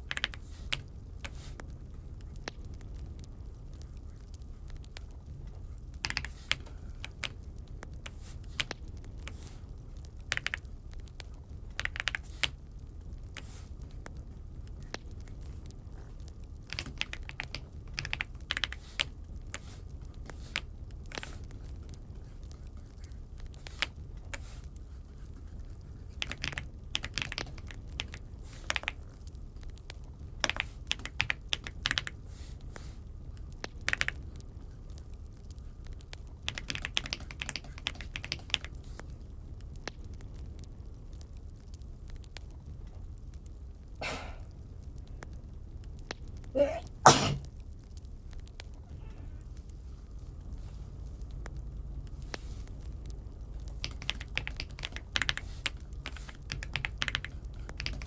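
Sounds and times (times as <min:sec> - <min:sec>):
mechanical keyboard typing: 0:00.1 - 0:00.8, 0:06.0 - 0:07.2, 0:10.3 - 0:10.6, 0:11.8 - 0:12.5, 0:16.7 - 0:19.1, 0:26.2 - 0:29.0, 0:30.4 - 0:32.1, 0:33.9 - 0:34.2, 0:36.5 - 0:38.7, 0:53.7 - 0:58.0
steady low hum: 0:42.6 - 0:58.0.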